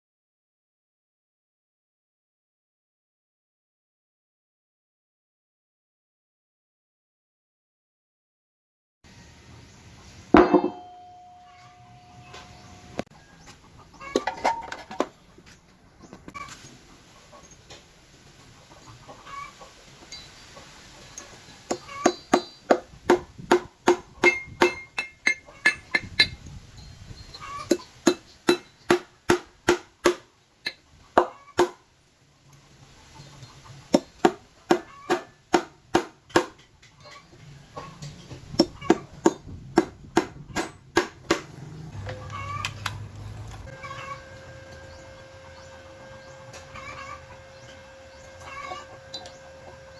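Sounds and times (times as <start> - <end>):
hammer ringing on steel bar: 10.4 - 12.7, 24.2 - 26.4.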